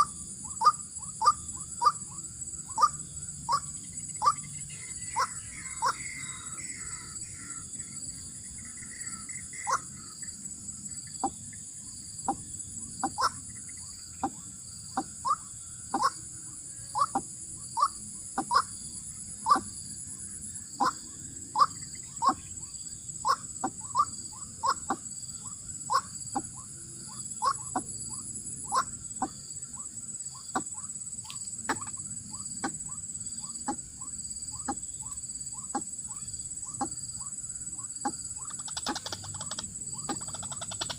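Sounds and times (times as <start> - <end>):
insects chorus: 0.0 - 40.9.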